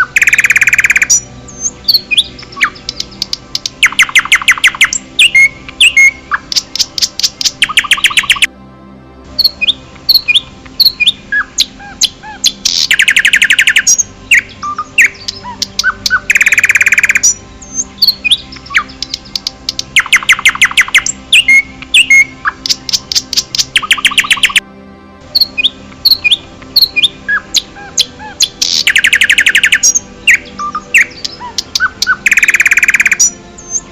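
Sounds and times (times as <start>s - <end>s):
bird rapid trill: 0.0s - 1.2s, 1.9s - 8.5s, 9.4s - 24.6s, 25.3s - 33.4s
birds chirping and whistling: 0.0s - 8.5s, 9.3s - 24.6s, 25.3s - 33.9s.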